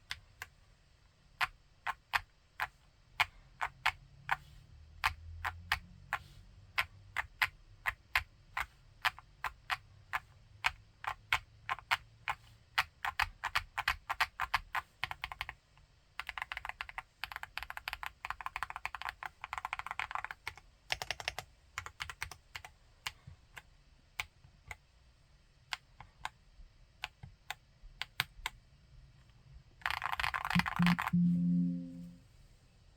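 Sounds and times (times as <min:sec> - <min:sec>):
mechanical keyboard typing: 0:16.2 - 0:22.7, 0:29.9 - 0:31.9.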